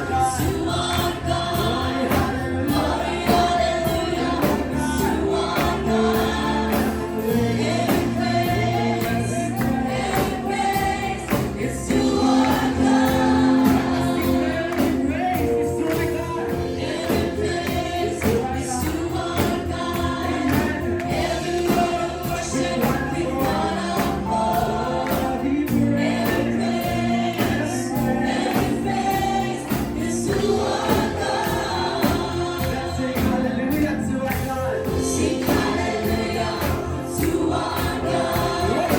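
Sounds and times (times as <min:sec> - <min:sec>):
band with steady beat: 0:00.0 - 0:38.9
group of voices singing: 0:00.0 - 0:38.9.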